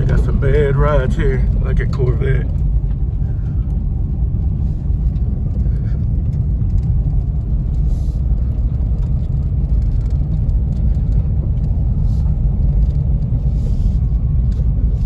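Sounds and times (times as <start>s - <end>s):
car engine deep rumble: 0.0s - 15.0s.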